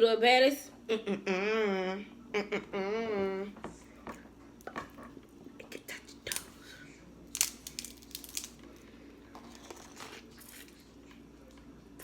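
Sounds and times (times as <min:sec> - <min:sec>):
crab shell cracking: 0:07.3 - 0:08.7.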